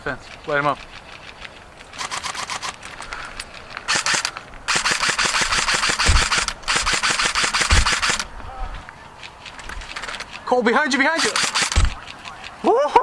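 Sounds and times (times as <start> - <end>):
airsoft guns firing bursts: 3.9 - 8.3, 11.1 - 12.1.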